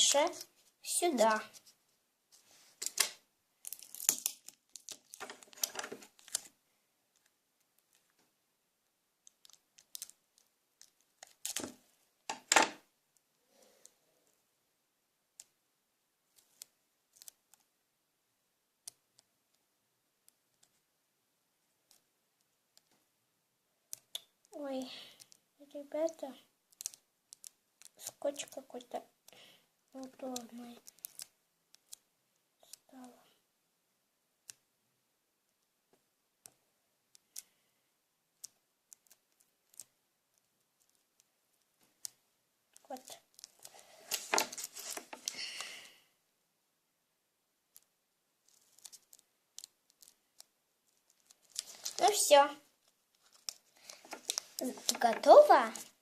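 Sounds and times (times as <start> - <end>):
paper and tape clicks: 26.1 - 28.6, 30.0 - 32.0, 48.5 - 52.2.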